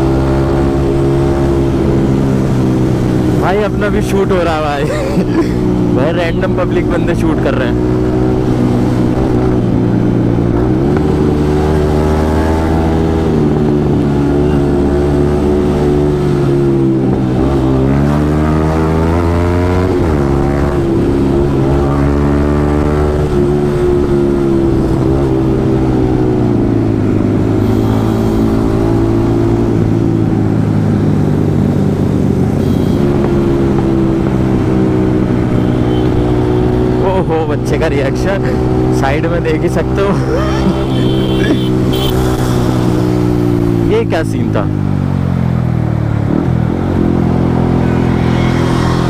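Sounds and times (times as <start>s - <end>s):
motorcycle engine running: 23.4s - 37.4s, 39.8s - 43.9s.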